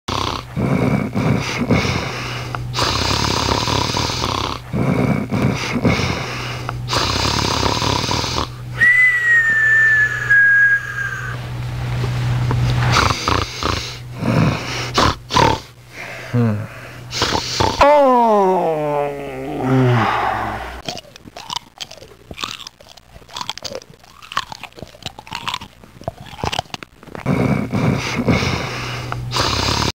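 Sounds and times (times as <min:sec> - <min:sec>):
dog snoring: 0:00.1 - 0:08.6, 0:12.8 - 0:15.8, 0:16.4 - 0:17.9, 0:27.2 - 0:30.0
thin high falling tone: 0:09.0 - 0:11.4.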